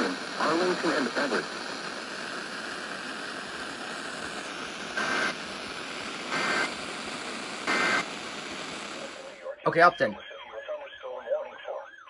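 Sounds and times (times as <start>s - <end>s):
steady radio hiss: 0.0s - 11.8s
two-tone data burst squawks: 5.0s - 5.4s, 6.3s - 6.7s, 7.7s - 8.1s.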